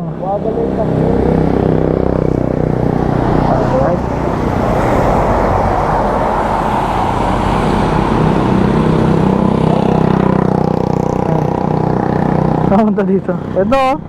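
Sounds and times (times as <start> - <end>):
wind and road noise: 0.0 - 14.0
scooter engine running: 7.5 - 13.6.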